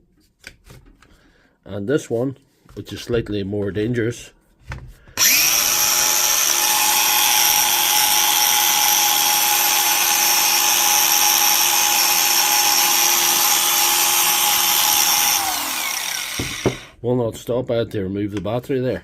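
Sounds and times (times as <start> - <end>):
angle grinder whining: 5.2 - 17.0.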